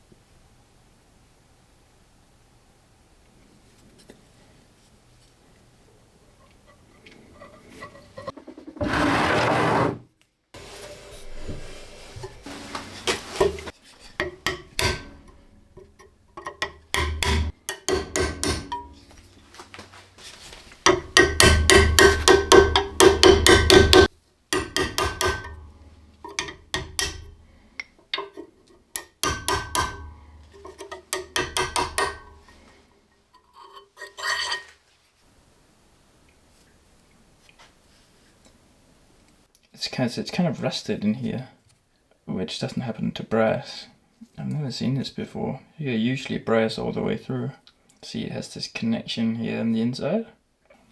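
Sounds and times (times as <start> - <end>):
hammer tapping on metal: 14.2 - 19.3, 20.8 - 27.4, 28.9 - 32.6.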